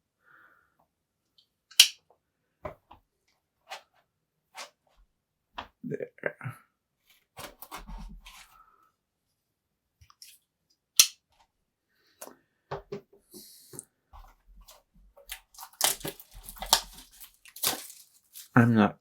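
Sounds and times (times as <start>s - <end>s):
box snapping: 1.7s - 2.0s, 15.2s - 18.0s
packaging crinkling: 14.7s - 18.6s.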